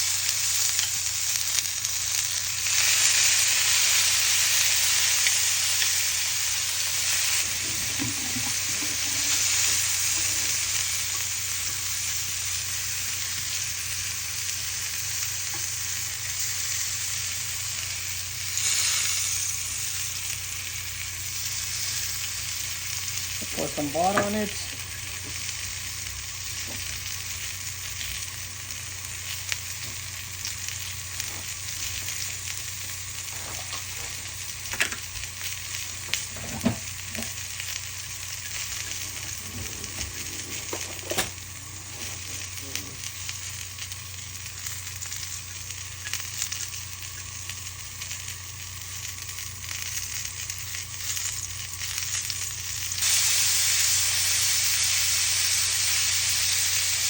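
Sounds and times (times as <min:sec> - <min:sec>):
food sizzling on grill: 0:00.0 - 0:57.0.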